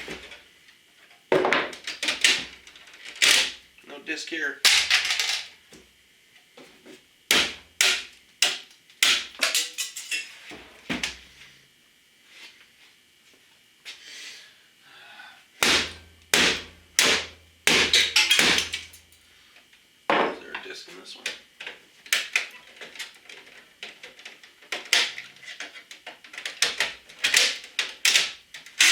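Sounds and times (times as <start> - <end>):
hammer striking computer case: 7.3 - 9.4, 15.6 - 19.0.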